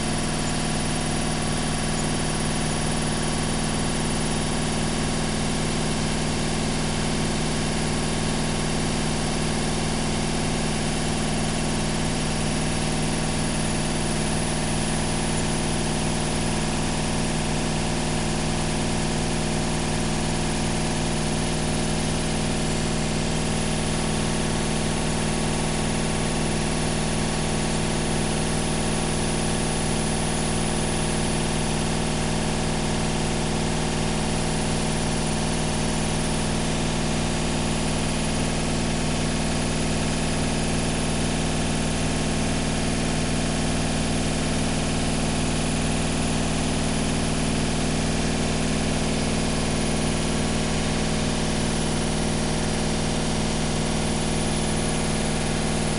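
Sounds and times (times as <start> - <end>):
washing machine motor hum: 0.0 - 55.9.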